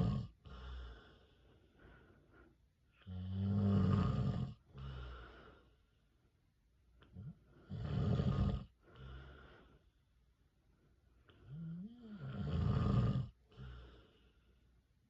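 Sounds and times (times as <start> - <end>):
man snoring: 0.0 - 1.2, 3.0 - 5.3, 7.2 - 9.2, 11.5 - 14.0
soft breath: 0.0 - 3.0, 4.7 - 6.5, 8.7 - 11.6, 13.4 - 15.0.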